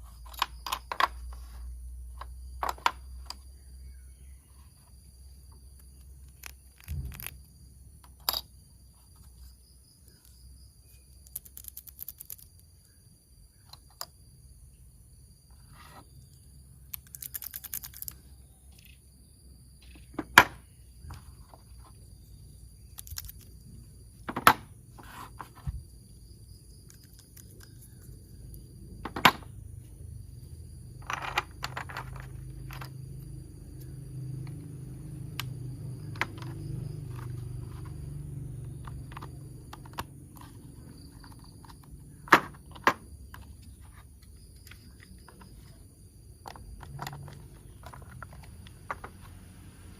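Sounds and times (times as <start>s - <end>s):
plastic toy parts clicking: 11.2s - 12.6s, 16.9s - 18.2s, 22.9s - 23.6s
plastic parts rattling: 16.9s - 18.2s, 31.0s - 32.9s, 46.4s - 49.2s.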